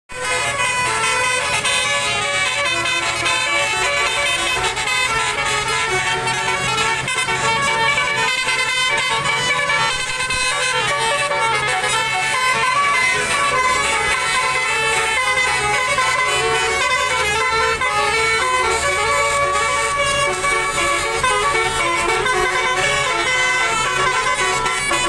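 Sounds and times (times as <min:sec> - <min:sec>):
bus engine low rumble: 0:00.1 - 0:25.0
multi-tone bus horn tune: 0:00.1 - 0:25.0.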